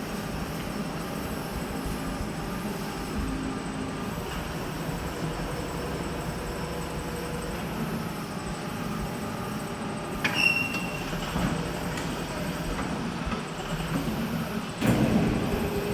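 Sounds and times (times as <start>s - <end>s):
metallic clank with squeal: 10.2s - 11.1s.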